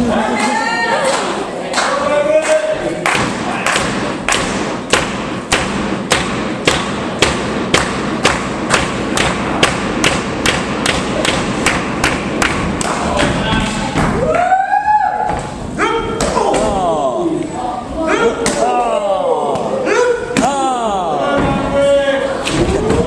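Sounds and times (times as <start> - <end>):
crowd voices: 0.0 - 4.9, 12.6 - 23.0.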